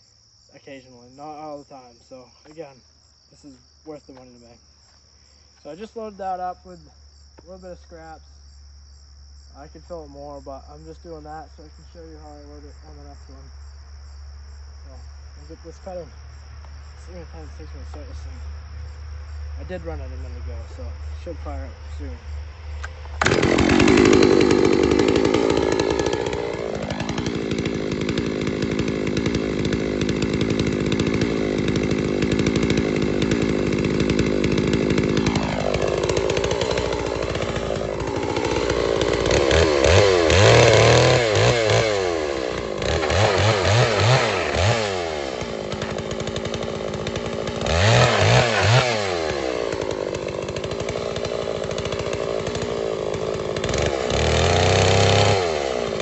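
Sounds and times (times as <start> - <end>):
chainsaw cutting wood: 3.4 - 8.6, 9.6 - 13.6, 14.8 - 56.0
chainsaw engine revving: 5.6 - 8.2, 9.6 - 13.5, 17.0 - 18.4, 19.6 - 56.0.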